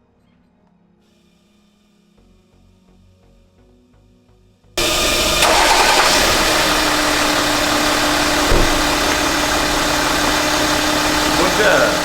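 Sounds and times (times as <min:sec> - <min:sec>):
car engine idling: 0:04.8 - 0:12.0.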